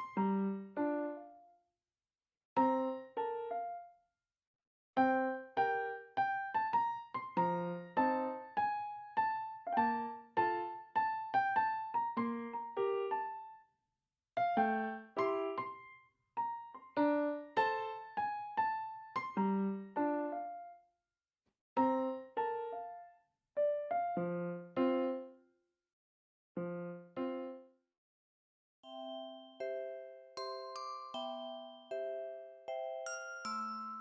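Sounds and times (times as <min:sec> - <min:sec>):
gentle piano melody: 0:00.0 - 0:01.6, 0:02.6 - 0:04.0, 0:05.0 - 0:13.6, 0:14.4 - 0:20.9, 0:21.8 - 0:25.4, 0:26.6 - 0:27.7, 0:28.8 - 0:34.0.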